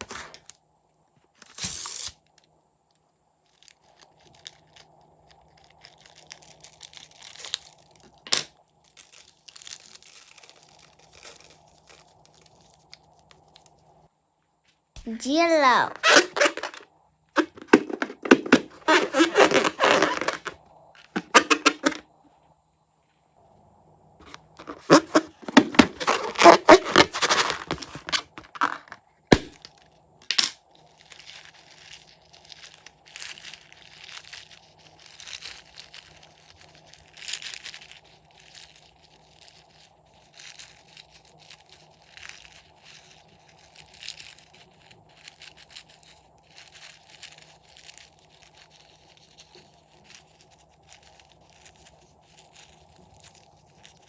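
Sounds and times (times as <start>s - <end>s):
slime crinkling and crackling: 3.4s - 13.8s, 18.2s - 21.3s, 24.2s - 28.6s, 30.7s - 54.0s.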